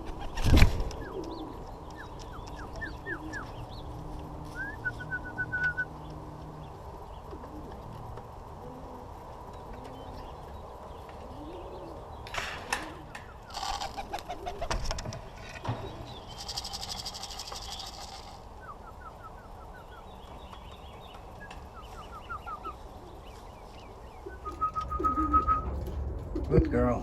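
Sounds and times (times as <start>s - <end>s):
pigeon wings clapping and fluttering: 0.0s - 1.4s, 12.3s - 18.6s, 24.4s - 26.7s
small songbirds chirping: 0.0s - 25.8s.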